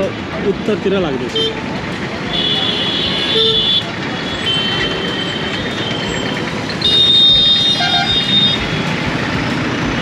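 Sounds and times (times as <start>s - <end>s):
road traffic noise: 0.0s - 10.0s
vehicle horn: 2.3s - 6.2s, 6.8s - 8.9s.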